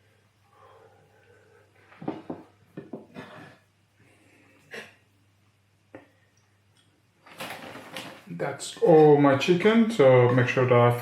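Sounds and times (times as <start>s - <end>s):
person breathing: 0.0s - 2.0s, 4.0s - 4.9s.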